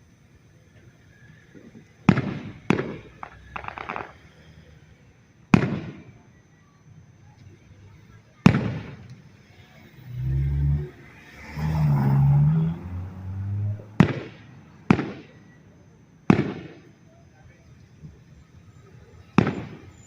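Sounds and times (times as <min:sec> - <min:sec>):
fireworks booming with echo: 0:00.8 - 0:06.4, 0:08.3 - 0:09.5, 0:13.3 - 0:20.0
crackling pops: 0:01.6 - 0:04.5, 0:05.5 - 0:06.1, 0:08.4 - 0:09.2, 0:13.6 - 0:15.5, 0:16.3 - 0:17.0, 0:19.3 - 0:20.0.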